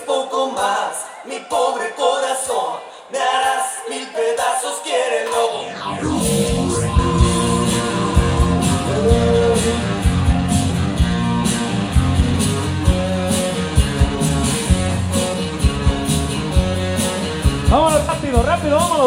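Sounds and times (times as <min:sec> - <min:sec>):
music with beat and guitar: 0:05.9 - 0:19.0.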